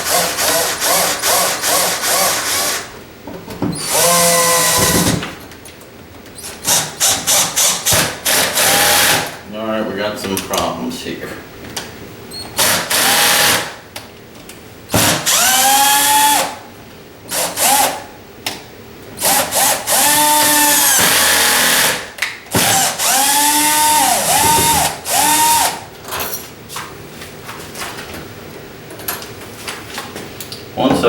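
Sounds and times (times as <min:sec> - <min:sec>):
power drill driving screws: 0:00.1 - 0:02.9, 0:03.8 - 0:05.2, 0:06.7 - 0:09.4, 0:12.6 - 0:13.8, 0:14.9 - 0:16.6, 0:17.3 - 0:18.0, 0:19.2 - 0:25.8.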